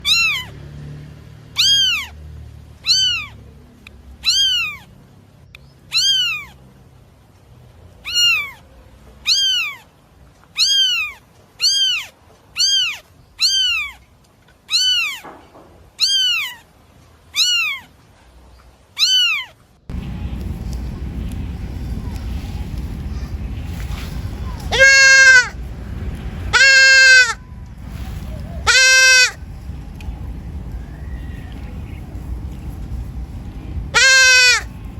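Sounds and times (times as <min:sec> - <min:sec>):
high-pitched animal calls: 0:00.0 - 0:00.6, 0:01.5 - 0:02.2, 0:02.8 - 0:03.4, 0:04.2 - 0:04.9, 0:05.9 - 0:06.6, 0:08.0 - 0:09.9, 0:10.6 - 0:14.1, 0:14.7 - 0:15.4, 0:16.0 - 0:16.7, 0:17.3 - 0:17.9, 0:19.0 - 0:19.6, 0:24.4 - 0:25.6, 0:26.5 - 0:27.4, 0:28.3 - 0:29.4, 0:33.9 - 0:34.7.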